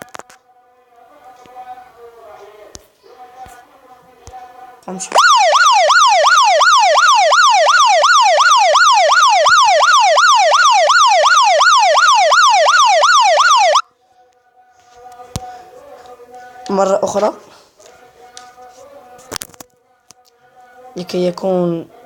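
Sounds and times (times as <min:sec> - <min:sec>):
phone alarm electronic wail: 0:05.2 - 0:13.8.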